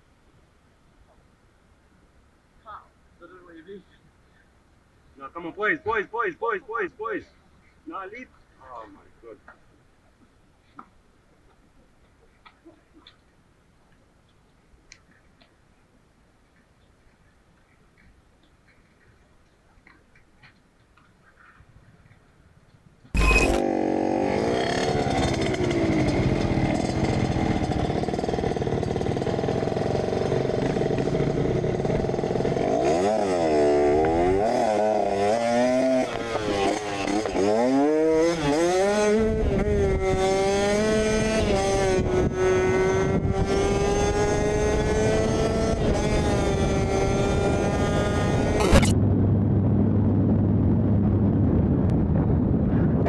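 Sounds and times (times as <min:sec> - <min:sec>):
motorcycle engine revving: 0:23.2 - 0:49.0.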